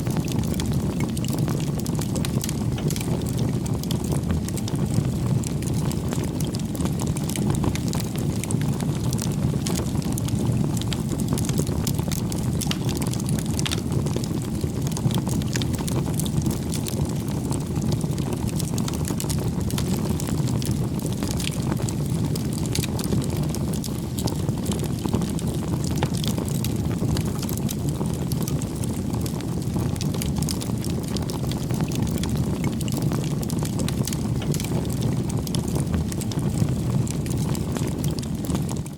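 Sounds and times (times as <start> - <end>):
fire crackling: 0.0 - 38.9.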